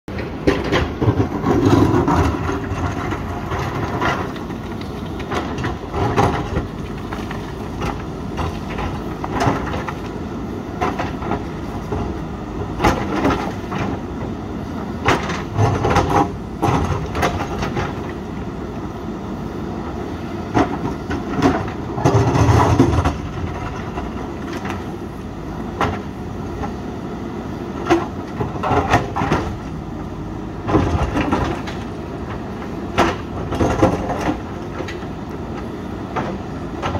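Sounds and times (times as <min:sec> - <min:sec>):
diesel engine running under load: 0:00.1 - 0:36.9.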